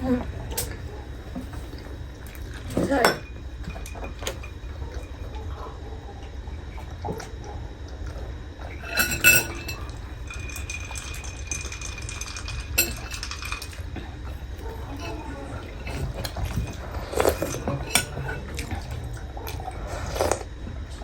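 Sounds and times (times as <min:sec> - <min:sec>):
cutlery clinking against dishes: 0:08.7 - 0:13.8, 0:14.8 - 0:19.0.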